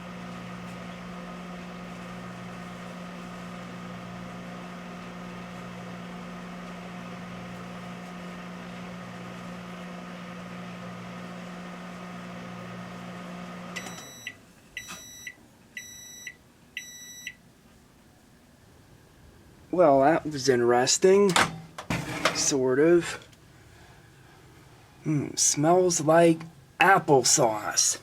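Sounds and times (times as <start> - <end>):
microwave oven humming: 0.0 - 28.0
short high beeps: 13.8 - 17.4.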